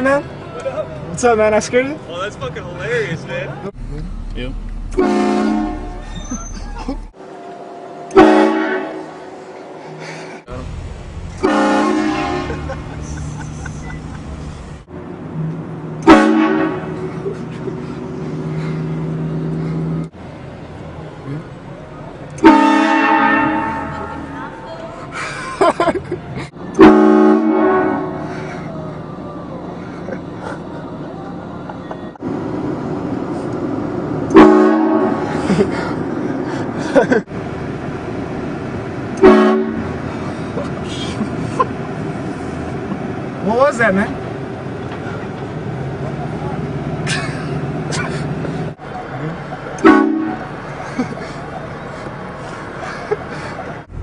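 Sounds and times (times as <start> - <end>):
train horn blasting: 4.9 - 6.1, 8.1 - 9.2, 11.4 - 12.7, 16.0 - 17.0, 22.4 - 24.6, 26.7 - 28.3, 34.3 - 35.3, 39.2 - 39.9, 49.8 - 50.5.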